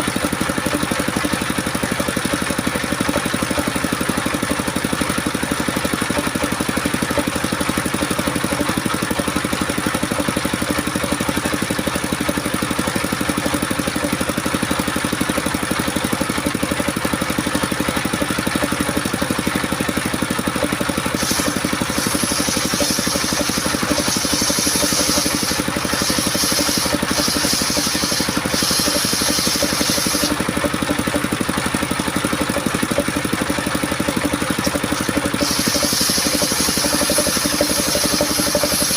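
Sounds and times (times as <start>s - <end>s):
engine-driven circular saw running: 0.0s - 38.9s
saw blade rasping through wood: 20.9s - 30.7s, 34.4s - 38.9s.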